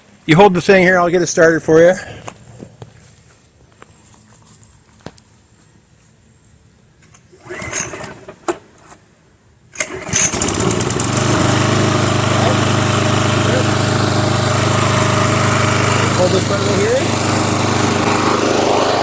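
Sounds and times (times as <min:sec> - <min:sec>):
lawn mower engine running: 0:07.3 - 0:08.5, 0:09.7 - 0:19.0
recoil starter rattle: 0:09.8 - 0:19.0.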